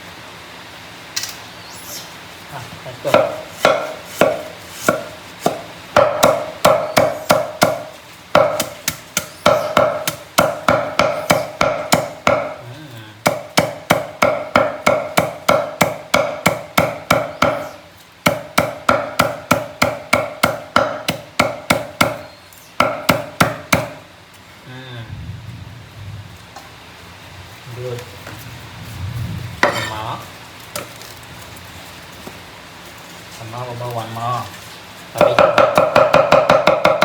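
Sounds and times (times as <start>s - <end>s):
knife chopping on cutting board: 3.1s - 12.6s, 13.2s - 24.0s, 29.6s - 30.0s, 35.2s - 37.0s.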